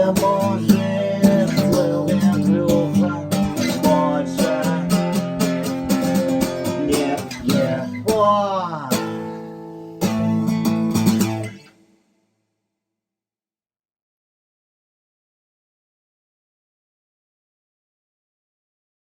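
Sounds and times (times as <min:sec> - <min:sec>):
acoustic guitar strummed and picked: 0:00.0 - 0:12.0.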